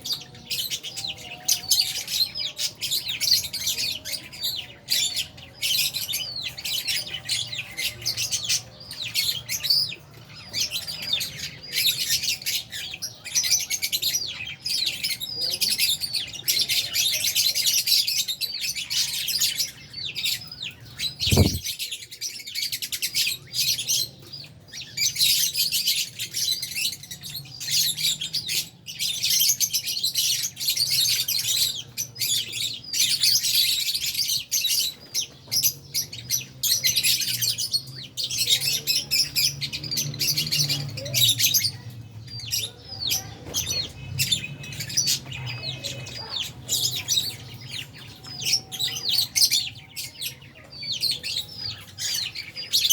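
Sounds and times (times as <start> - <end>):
lovebirds chirping: 0.0 - 52.9.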